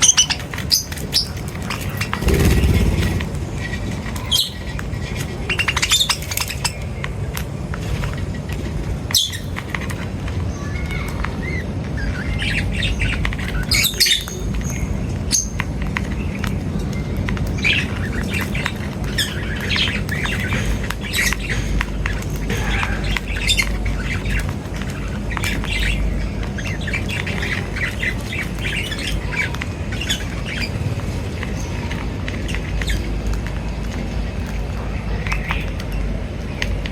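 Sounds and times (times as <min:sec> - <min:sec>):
birds chirping: 0:00.0 - 0:36.9
low rumble: 0:02.1 - 0:04.1.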